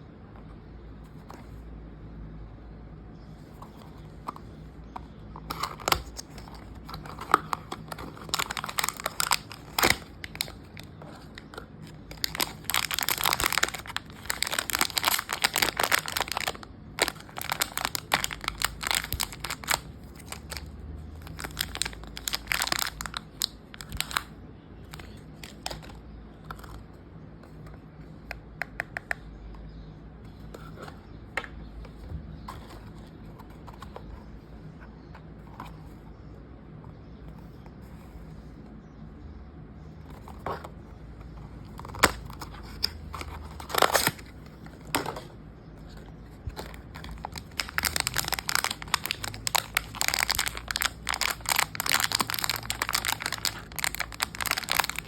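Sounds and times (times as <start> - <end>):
packaging crinkling and tearing: 5.4 - 26.8, 41.6 - 45.3, 45.9 - 55.0.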